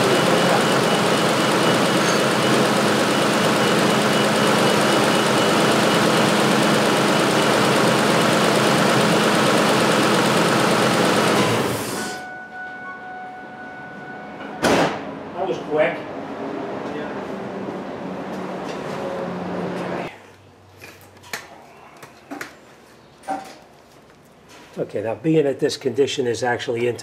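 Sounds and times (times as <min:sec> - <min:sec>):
truck engine running: 0:00.0 - 0:12.2.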